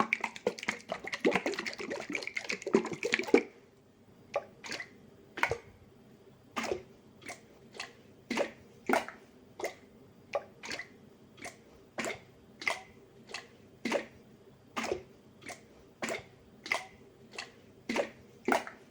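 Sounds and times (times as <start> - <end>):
sauce sloshing in shaken jar: 0.0 - 3.5.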